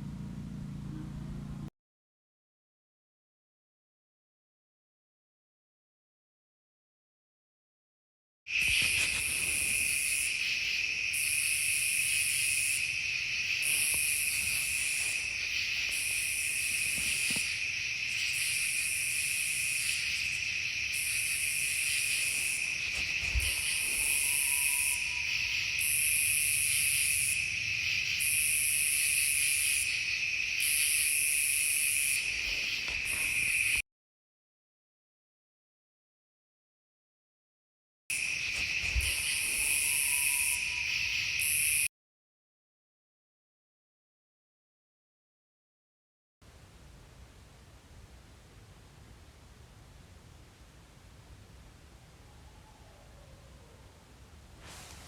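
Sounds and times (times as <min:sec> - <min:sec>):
higher-pitched insect calling in bursts: 0:08.5 - 0:33.8, 0:38.2 - 0:41.9
insect steady high trill: 0:08.5 - 0:33.8, 0:38.1 - 0:41.9.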